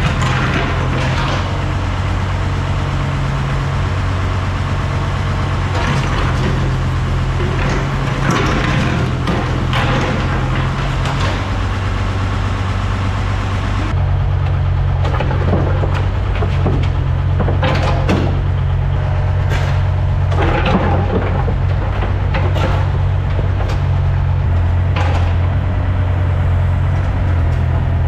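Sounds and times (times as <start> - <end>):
construction machine engine running: 0.0 - 28.0
stone scraping and clattering: 5.7 - 11.5, 15.0 - 25.7.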